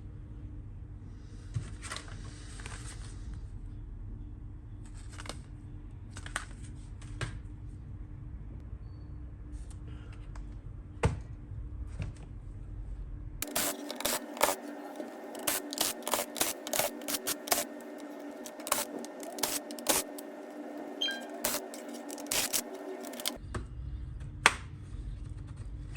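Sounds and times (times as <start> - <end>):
steady hum: 13.4 - 23.4.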